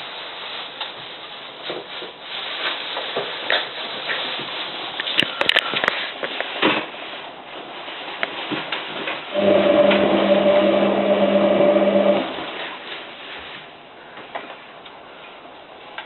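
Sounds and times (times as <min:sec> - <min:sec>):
quiet machine noise: 0:00.0 - 0:16.0
washing machine motor humming: 0:09.3 - 0:12.7.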